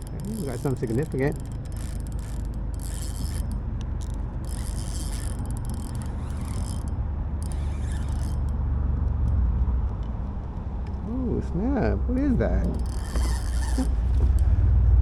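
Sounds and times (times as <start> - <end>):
fishing reel buzzing: 0.0 - 8.6, 12.6 - 14.4
steady low rumble: 0.0 - 15.0.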